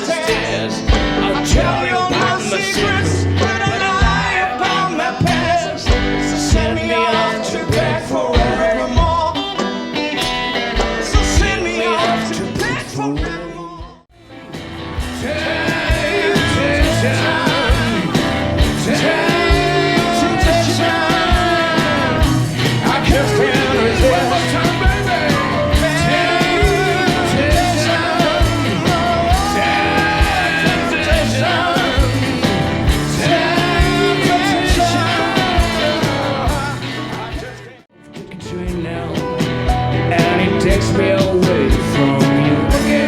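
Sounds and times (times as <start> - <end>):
song with singing over instruments: 0.0 - 43.0
low drum beat: 0.9 - 2.4, 14.7 - 37.6.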